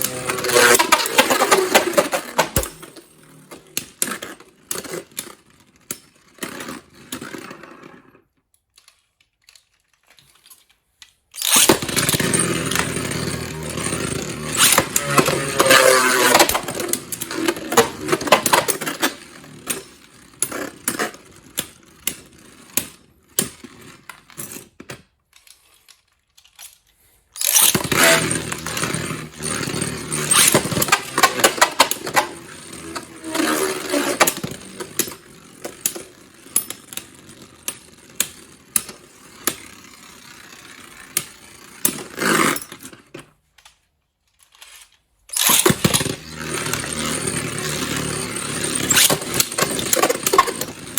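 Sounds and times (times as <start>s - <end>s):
sharp clicks of colliding tops: 0.0s - 3.0s, 27.4s - 36.0s, 45.4s - 50.9s
spinning tops whirring and clattering: 0.0s - 4.0s, 11.4s - 21.3s, 27.4s - 42.8s, 45.3s - 50.9s.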